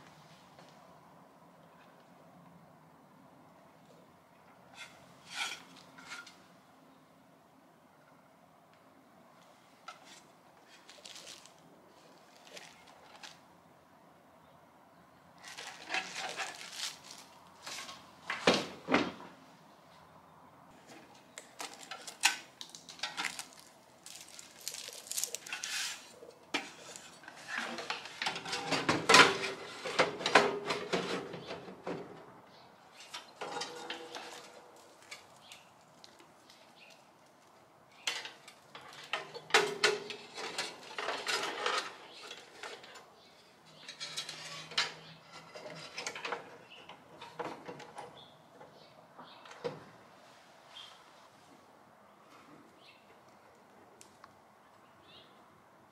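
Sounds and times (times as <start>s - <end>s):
metal objects clinking and rattling: 15.4s - 17.9s, 21.6s - 26.1s.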